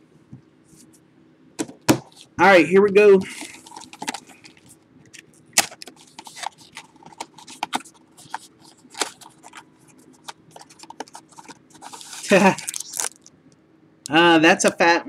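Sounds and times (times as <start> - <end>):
packaging rustling and crinkling: 3.2 - 13.3
wrapper clicks: 10.6 - 13.3.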